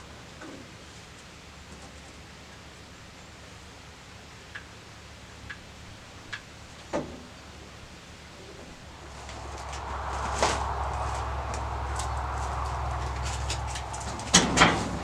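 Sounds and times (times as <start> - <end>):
faint low hum: 8.7 - 15.0.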